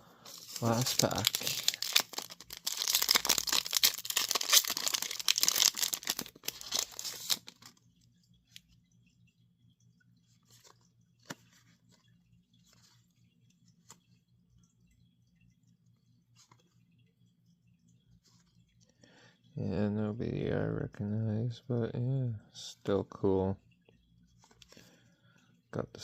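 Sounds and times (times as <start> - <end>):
foil wrapper tearing and crinkling: 0.3 - 7.8.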